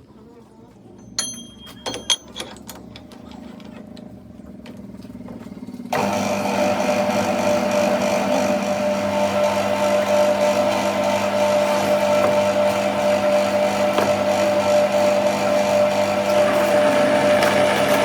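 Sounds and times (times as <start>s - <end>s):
metal clinks: 1.0s - 3.0s
machine humming: 3.6s - 18.0s.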